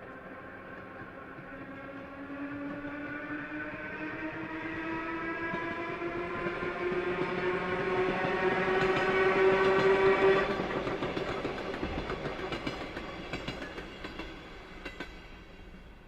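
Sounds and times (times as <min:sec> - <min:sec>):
train wheels clattering on rails: 0:00.0 - 0:16.0
train horn: 0:02.4 - 0:10.8.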